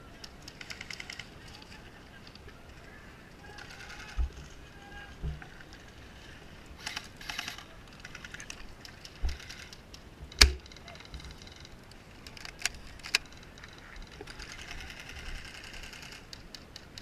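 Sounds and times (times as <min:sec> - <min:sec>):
sharp clicks: 0:06.8 - 0:17.0.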